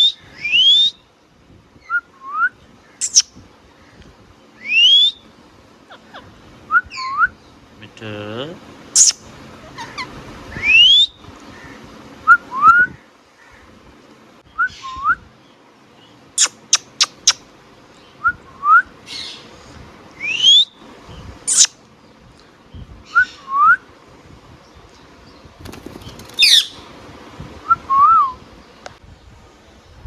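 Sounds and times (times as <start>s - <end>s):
parrot whistling and chirping: 0.0s - 1.0s, 1.8s - 3.3s, 4.6s - 5.2s, 9.0s - 11.2s, 16.4s - 17.4s, 20.2s - 20.8s, 21.5s - 21.7s, 26.4s - 26.8s.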